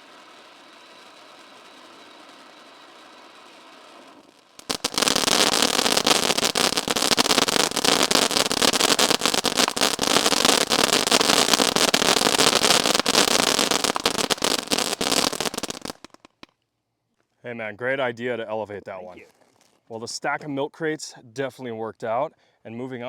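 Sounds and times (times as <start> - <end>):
firework fountain crackling: 0.0 - 16.5.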